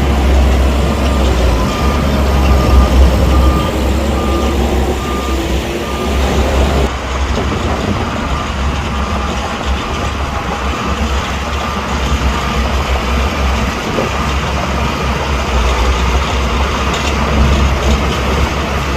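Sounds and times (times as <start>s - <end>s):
diesel engine rumbling: 0.0s - 18.9s
reversing alarm beeps: 0.8s - 6.9s, 8.2s - 14.1s.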